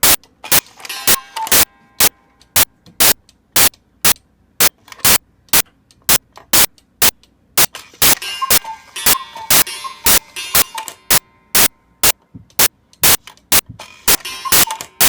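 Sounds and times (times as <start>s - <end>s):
clock pendulum ticking: 8.2s - 11.7s, 14.1s - 15.0s.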